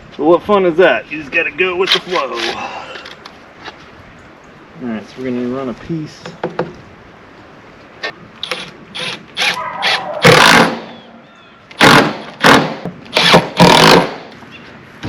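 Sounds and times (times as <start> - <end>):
power driver running screws: 8.4 - 10.7, 11.8 - 14.1.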